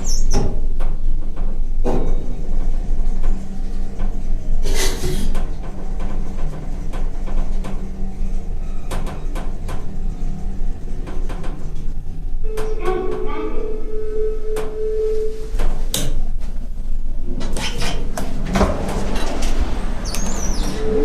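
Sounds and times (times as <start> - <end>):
elevator humming: 0.0 - 21.0
hooting tone: 12.4 - 15.6, 20.2 - 21.0.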